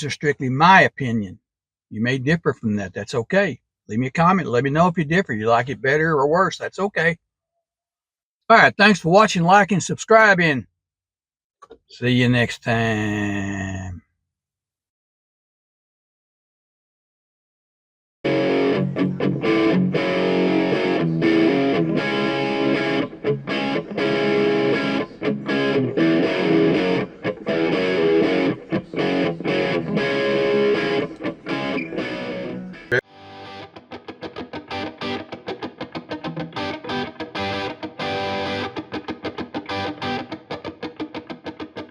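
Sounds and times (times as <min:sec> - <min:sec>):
electric guitar music: 0:18.3 - 0:41.9.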